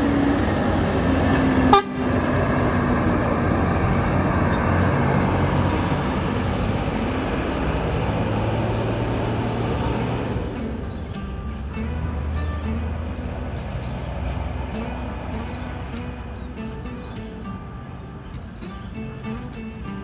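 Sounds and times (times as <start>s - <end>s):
diesel bus engine and road noise: 0.0s - 20.0s
horn tone: 0.1s - 3.1s.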